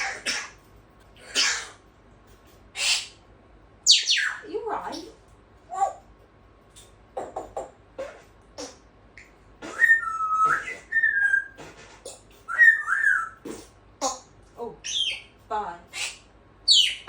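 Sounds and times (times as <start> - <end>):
parrot whistling gliding notes: 9.7 - 11.6, 12.5 - 13.4.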